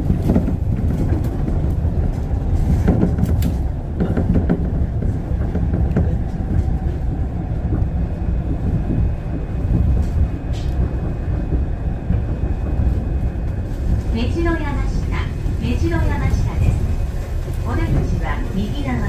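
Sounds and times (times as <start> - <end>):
train wheels rumbling on track: 0.0 - 19.0.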